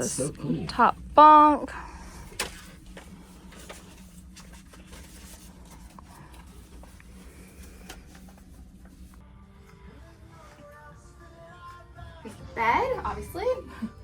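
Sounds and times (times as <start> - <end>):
low cabin hum: 0.0 - 14.0.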